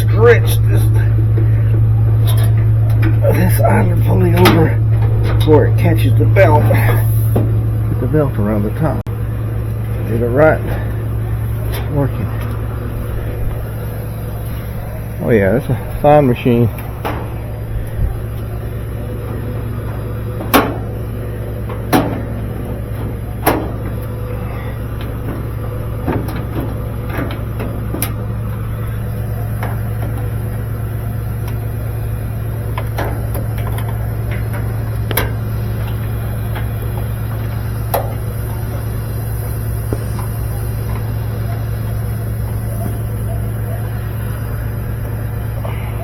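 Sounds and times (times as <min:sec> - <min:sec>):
steady low hum: 0:00.0 - 0:46.0
knocks and clicks of dryer parts: 0:01.0 - 0:07.8, 0:16.0 - 0:18.5, 0:19.2 - 0:30.7, 0:32.4 - 0:38.9.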